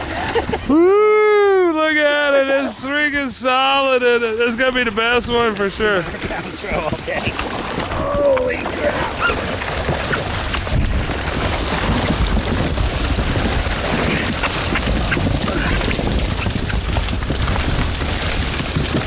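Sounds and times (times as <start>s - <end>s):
wind: 0.0s - 19.0s
rumble of water: 3.2s - 19.0s
fish thrashing and splashing: 3.5s - 19.0s.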